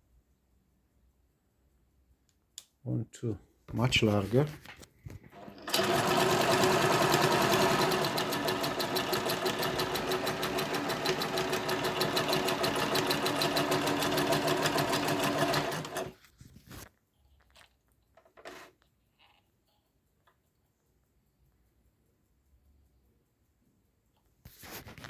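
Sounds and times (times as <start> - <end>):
sewing machine stitching: 5.2 - 16.2, 18.4 - 18.8.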